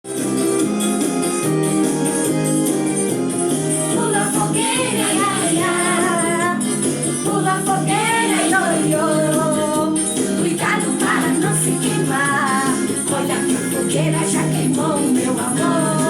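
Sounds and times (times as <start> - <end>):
person singing: 3.9 - 16.0.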